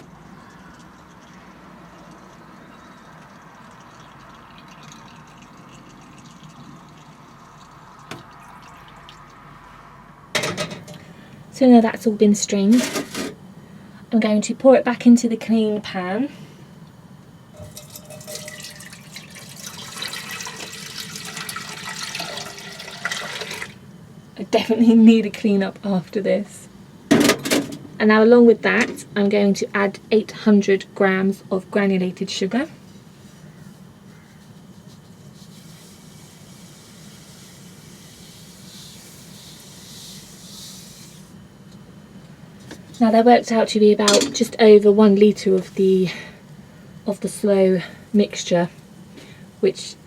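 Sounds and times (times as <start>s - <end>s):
steady low hum: 0.0s - 18.9s, 23.8s - 50.0s
liquid pouring into pan: 0.6s - 9.4s, 17.6s - 23.8s.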